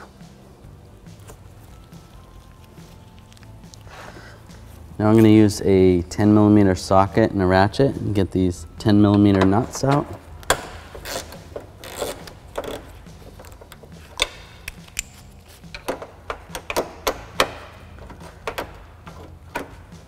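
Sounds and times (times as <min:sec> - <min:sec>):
ratchet clicks and knocks on metal: 0:09.1 - 0:20.0.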